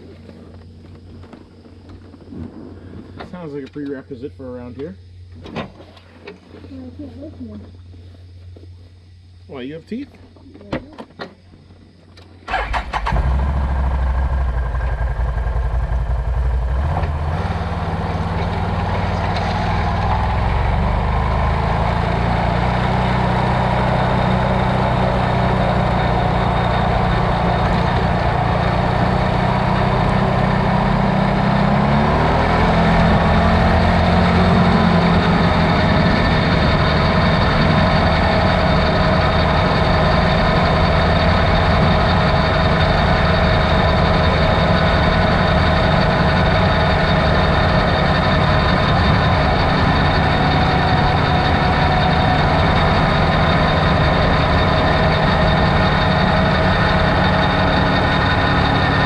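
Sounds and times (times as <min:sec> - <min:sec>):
vehicle engine cranking and idling: 0:12.1 - 0:59.0.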